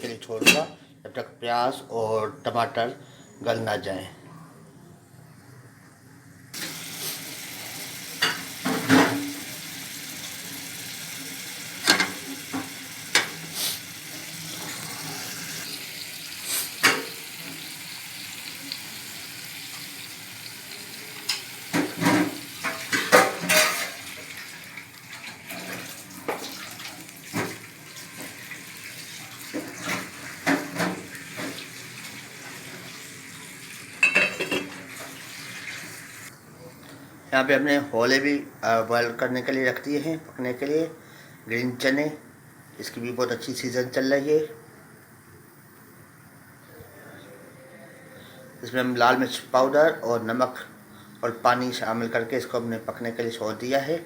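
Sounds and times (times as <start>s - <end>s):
pots and utensils clinking: 0.4s - 0.8s, 8.1s - 9.5s, 11.6s - 15.8s, 16.5s - 17.7s, 21.2s - 24.5s, 29.5s - 31.7s, 34.0s - 35.2s
steady hiss: 5.5s - 24.9s.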